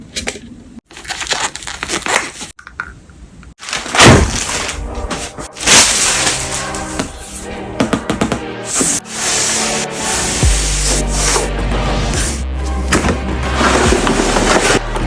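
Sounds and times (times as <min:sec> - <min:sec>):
packaging crackling and rustling: 0:00.9 - 0:02.6, 0:03.6 - 0:06.9.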